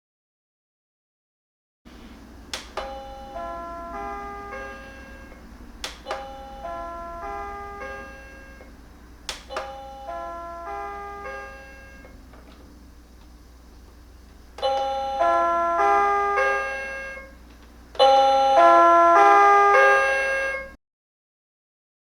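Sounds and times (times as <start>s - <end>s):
electronic chime melody: 2.7s - 8.7s, 9.5s - 12.2s, 14.6s - 17.4s, 18.0s - 20.7s.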